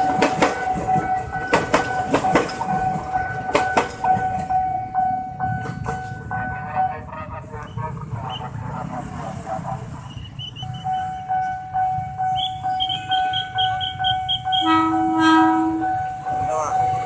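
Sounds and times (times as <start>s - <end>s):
high-pitched pulsing alarm: 0.0s - 17.0s
train rumble: 0.0s - 17.0s
train horn blast: 12.4s - 16.2s.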